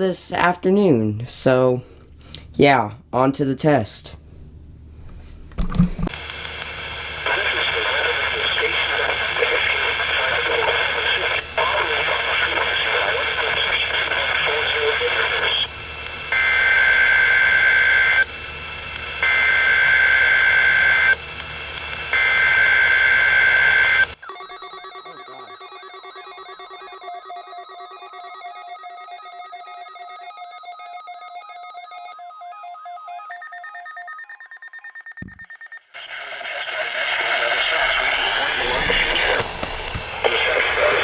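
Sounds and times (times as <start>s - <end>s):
radio static: 6.0s - 18.3s, 36.0s - 41.0s
weather alert radio alarms beeping: 22.1s - 41.0s
data screech bursts: 24.3s - 30.6s.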